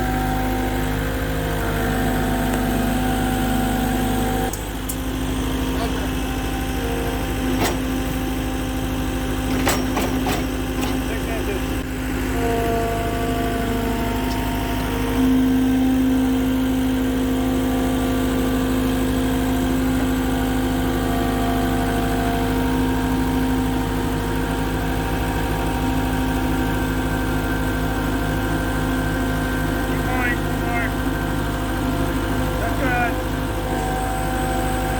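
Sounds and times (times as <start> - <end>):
engine idling: 0.0 - 34.9.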